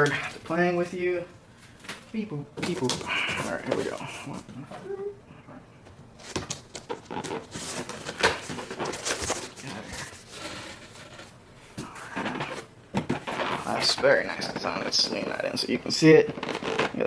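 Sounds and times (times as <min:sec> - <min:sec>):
cardboard rustling: 0:06.2 - 0:17.0.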